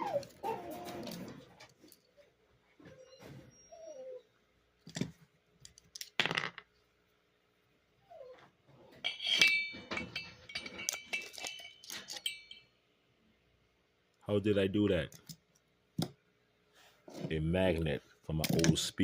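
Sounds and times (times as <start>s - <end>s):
screwdriver clinking on metal: 9.0s - 12.7s.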